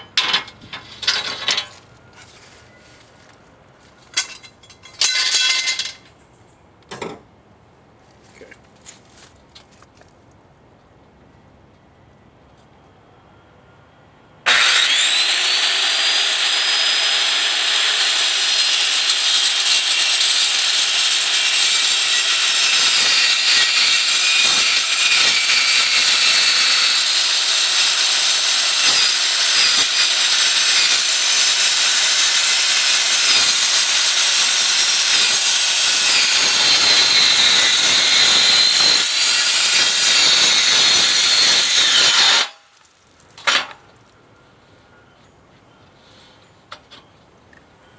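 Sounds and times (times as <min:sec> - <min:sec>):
circular saw cutting steel: 0:14.5 - 0:42.6.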